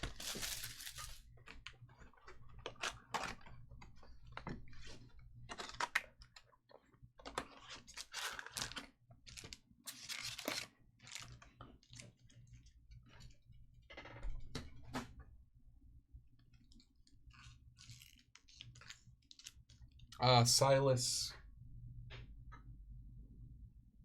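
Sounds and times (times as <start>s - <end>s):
packaging crinkling and rustling: 0.0s - 13.3s, 16.7s - 20.1s.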